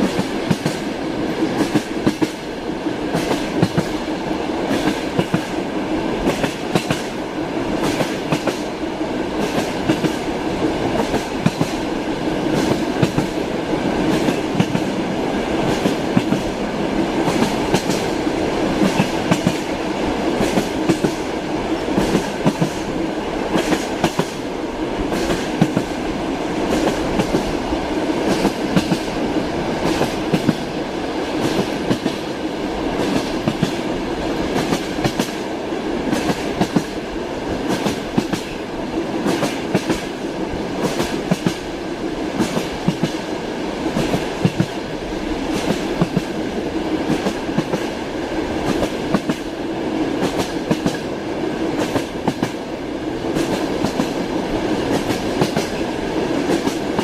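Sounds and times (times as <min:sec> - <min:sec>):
train wheels clattering over rails: 0:00.0 - 0:57.0.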